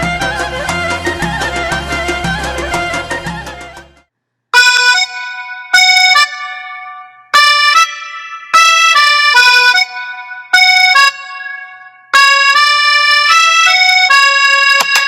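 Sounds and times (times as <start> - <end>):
music with held chords: 0.0 - 4.1
folk music with steady beat: 0.0 - 6.4.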